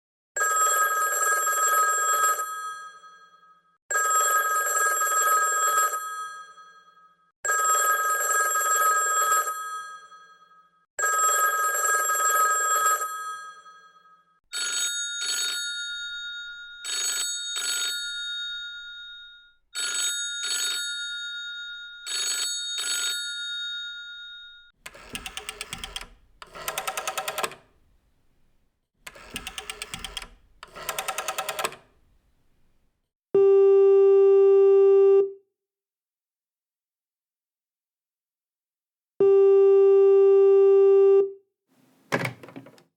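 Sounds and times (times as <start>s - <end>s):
telephone double rings: 14.6s - 19.0s, 19.8s - 21.2s, 24.9s - 28.0s, 29.1s - 32.2s
telephone long rings: 14.6s - 28.0s, 29.1s - 32.2s.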